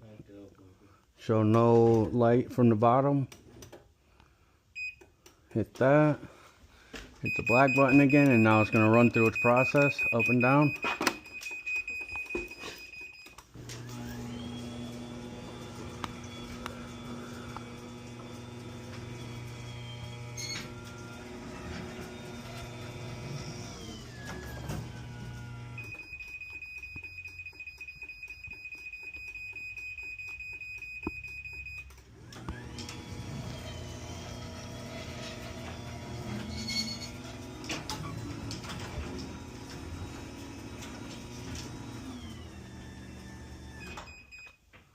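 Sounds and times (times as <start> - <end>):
steady high beep: 7.2 - 13.2
garage door opener motor humming: 13.5 - 26.0, 32.0 - 44.1.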